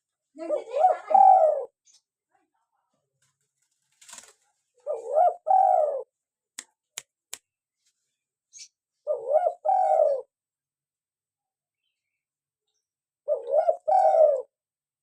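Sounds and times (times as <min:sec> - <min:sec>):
dove cooing: 0:00.4 - 0:01.8, 0:04.8 - 0:06.1, 0:09.0 - 0:10.3, 0:13.3 - 0:14.5.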